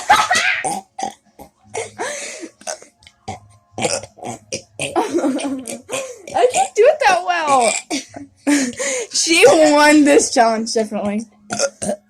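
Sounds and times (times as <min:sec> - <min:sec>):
person burping: 0:00.2 - 0:06.8, 0:07.5 - 0:08.2, 0:11.5 - 0:12.0.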